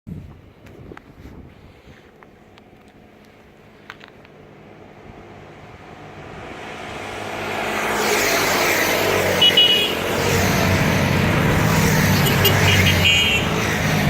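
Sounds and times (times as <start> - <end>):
motorcycle engines: 0.2 - 14.0.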